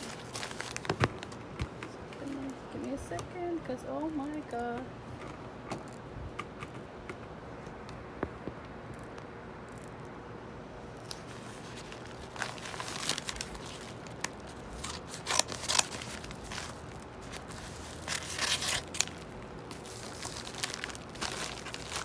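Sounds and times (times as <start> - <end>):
packaging tearing and crumpling: 0.0 - 1.5, 11.0 - 22.0.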